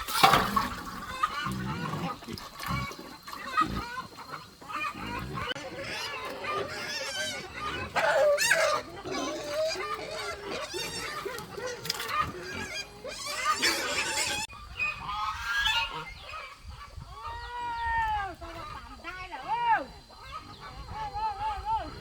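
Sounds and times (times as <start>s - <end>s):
geese honking: 0.0s - 17.5s.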